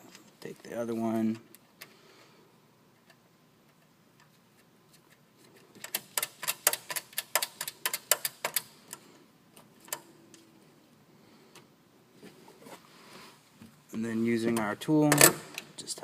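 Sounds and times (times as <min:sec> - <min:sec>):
sharp clicks of nut tightening: 0:05.8 - 0:09.0.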